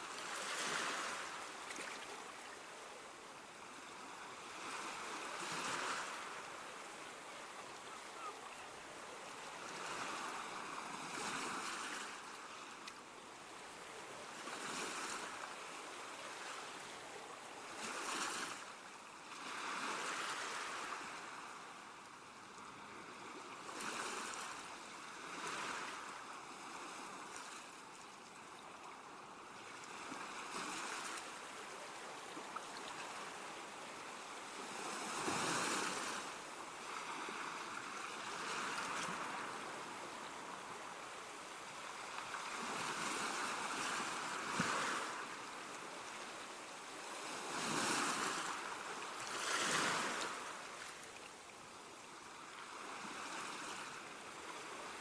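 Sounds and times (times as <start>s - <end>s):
water rushing: 4.4s - 12.4s.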